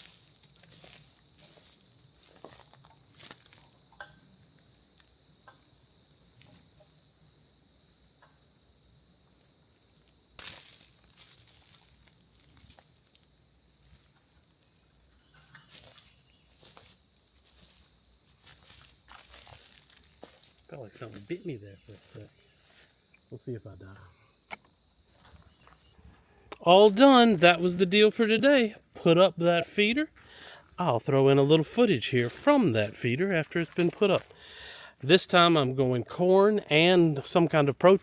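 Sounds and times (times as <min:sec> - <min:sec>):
rustling footsteps: 0:00.0 - 0:03.8, 0:10.4 - 0:23.1, 0:25.0 - 0:35.2
insect chorus: 0:00.0 - 0:38.0.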